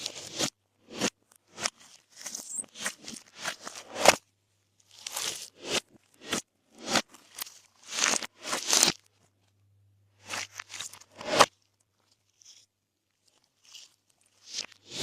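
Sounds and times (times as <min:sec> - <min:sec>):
slime crackling and popping: 0:07.1 - 0:09.1.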